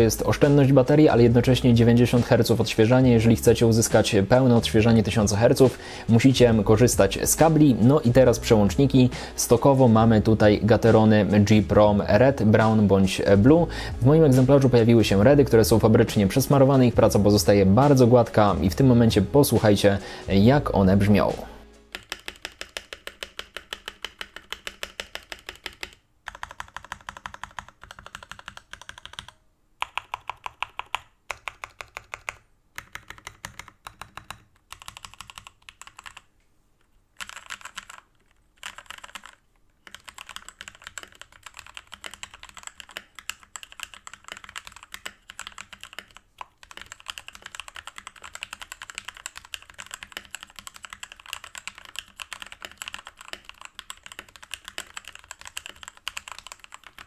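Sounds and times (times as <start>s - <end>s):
mechanical keyboard typing: 21.9s - 36.3s, 37.2s - 57.0s.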